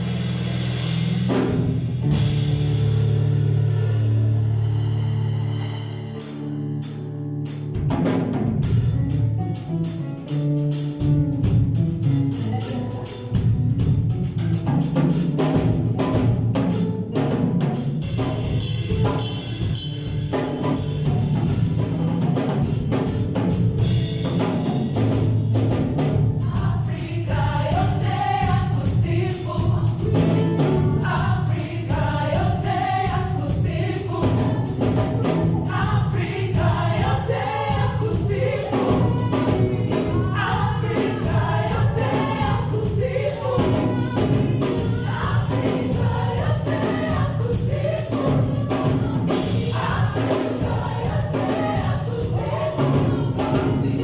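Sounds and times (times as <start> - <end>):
drum kit beat: 0.0 - 54.0
choir singing: 26.4 - 54.0.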